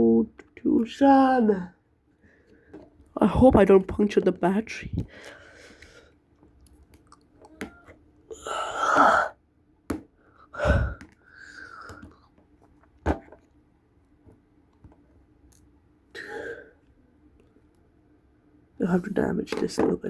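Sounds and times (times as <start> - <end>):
faint steady hum: 0.0 - 20.0
person sighing: 8.3 - 9.4, 10.4 - 12.1, 16.2 - 16.8.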